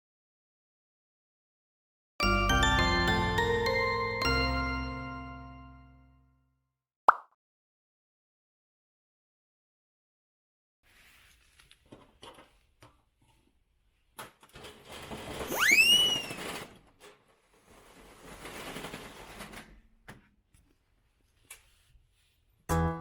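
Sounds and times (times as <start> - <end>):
sliding door rolling in track: 14.5 - 19.8
short high squeal: 15.5 - 16.6.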